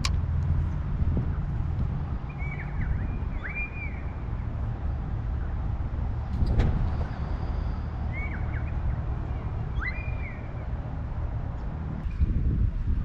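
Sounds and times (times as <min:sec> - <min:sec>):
bird whistling: 0:02.3 - 0:04.2, 0:07.2 - 0:10.6.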